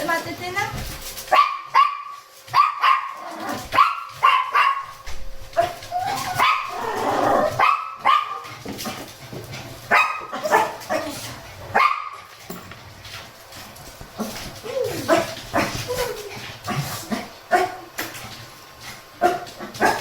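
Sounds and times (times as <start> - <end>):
small dog barking: 1.3 - 5.0, 5.6 - 8.4, 9.9 - 11.1, 11.8 - 12.2, 19.2 - 20.0
dog whining: 5.6 - 7.6.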